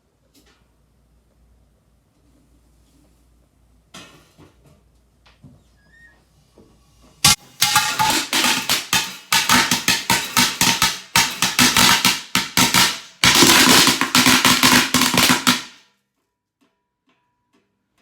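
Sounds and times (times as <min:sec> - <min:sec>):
fireworks banging in a pot: 0:07.2 - 0:15.8.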